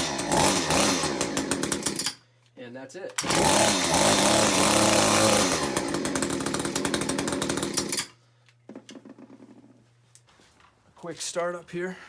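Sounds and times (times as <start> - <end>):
hedge trimmer engine revving: 0.0 - 2.2, 3.2 - 8.1.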